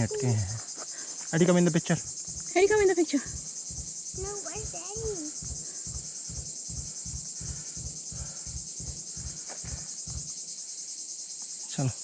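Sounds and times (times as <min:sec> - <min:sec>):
insects buzzing: 0:00.0 - 0:12.0
low pulsing: 0:01.7 - 0:10.3.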